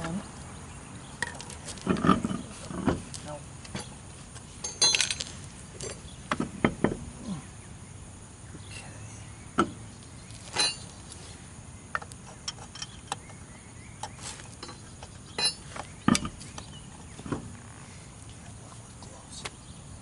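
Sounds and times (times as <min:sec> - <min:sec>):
metal clinks and knocks: 0:04.6 - 0:07.0, 0:10.5 - 0:10.9, 0:14.0 - 0:16.7.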